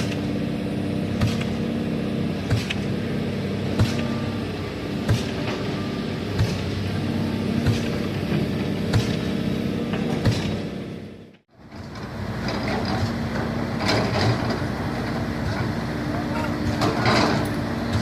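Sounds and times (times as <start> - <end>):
excavator diesel engine running: 0.0 - 18.0
sharp metallic knocks: 1.2 - 1.6, 2.4 - 2.9, 3.7 - 4.4, 5.0 - 6.8, 7.6 - 10.6.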